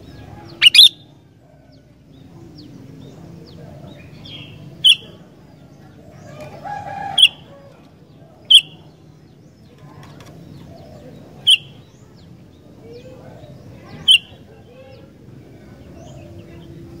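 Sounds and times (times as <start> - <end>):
lower drawn-out bird call: 0.4 - 1.1
bird giving sharp call notes: 0.6 - 1.0, 14.0 - 14.4.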